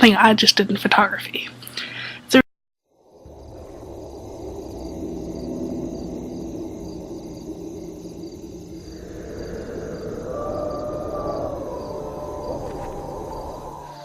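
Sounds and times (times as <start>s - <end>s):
insect-like chirring: 2.9s - 14.0s
low drone: 2.9s - 14.0s
wavering gliding tone: 3.0s - 14.0s.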